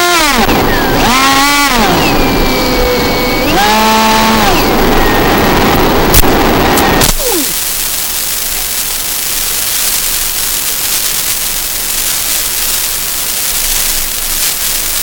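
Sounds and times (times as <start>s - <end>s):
steady loud hiss: 4.6s - 15.0s.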